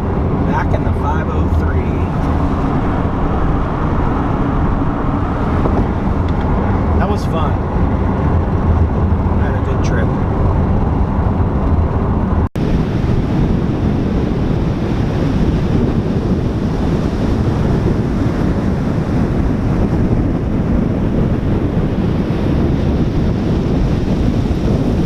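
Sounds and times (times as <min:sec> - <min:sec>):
ocean surf: 0:00.0 - 0:07.6, 0:12.6 - 0:25.0
wind on microphone: 0:00.0 - 0:25.0.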